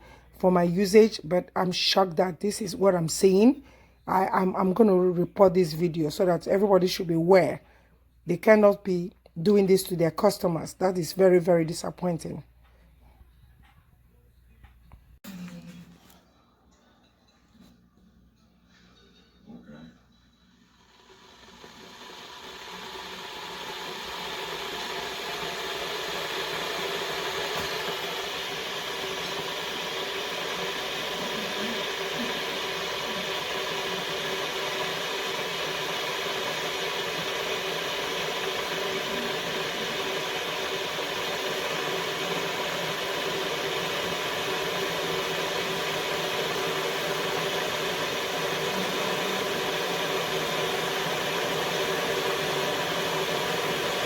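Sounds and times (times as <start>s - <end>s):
electric kettle heating water: 20.6s - 54.0s.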